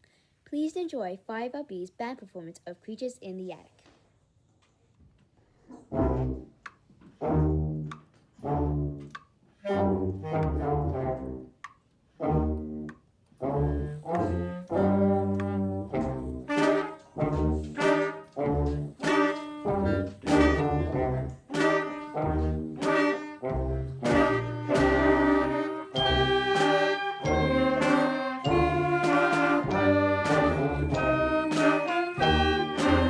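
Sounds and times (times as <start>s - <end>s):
wind band playing detached chords: 6.0s - 6.5s, 13.4s - 33.0s.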